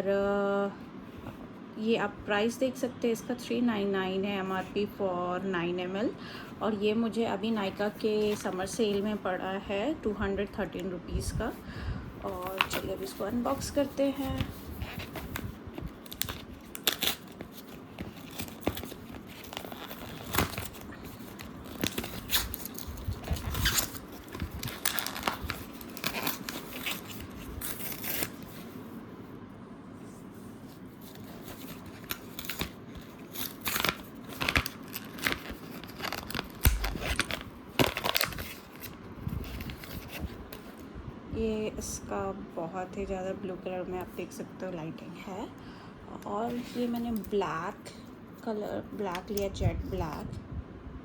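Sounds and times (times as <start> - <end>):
packaging tearing and crinkling: 14.3 - 28.7, 31.0 - 40.7.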